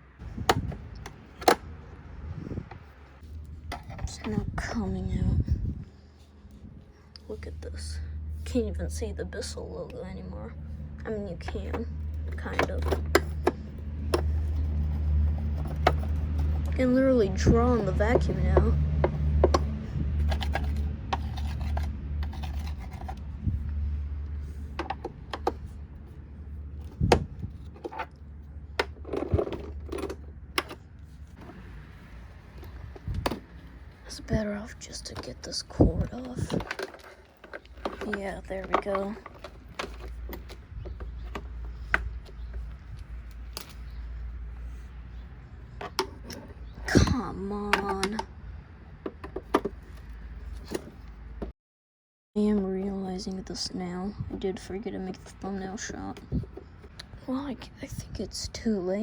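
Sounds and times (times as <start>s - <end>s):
low steady hum: 0.0s - 51.5s
plastic parts clicking and scraping: 0.2s - 1.9s, 11.4s - 16.8s, 17.8s - 23.4s, 24.4s - 51.5s
plastic parts clicking and knocking: 24.7s - 25.7s, 36.1s - 44.0s.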